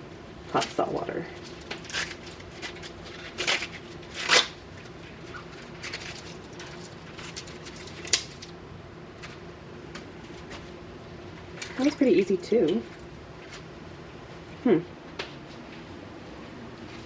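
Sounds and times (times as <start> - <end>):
corn husk rustling rips: 1.4 - 8.6
husk snapping: 7.3 - 8.6.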